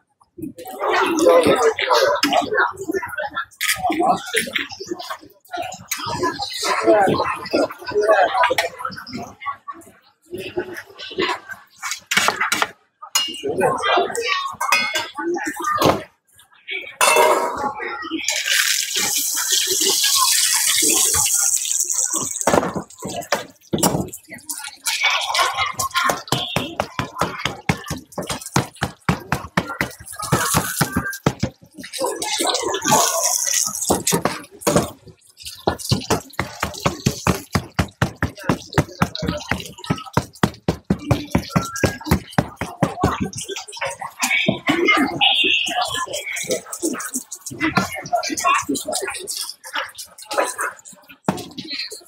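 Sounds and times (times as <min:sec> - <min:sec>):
hot oil sizzling: 0:18.3 - 0:24.3
utensils knocking: 0:26.0 - 0:31.9, 0:33.0 - 0:43.4
rapid knocking on work surface: 0:35.9 - 0:43.3.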